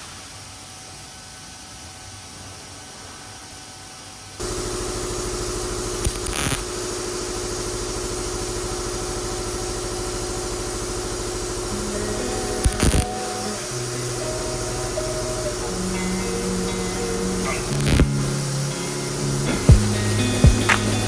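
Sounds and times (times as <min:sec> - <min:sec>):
welding arc crackling: 0:04.4 - 0:21.0.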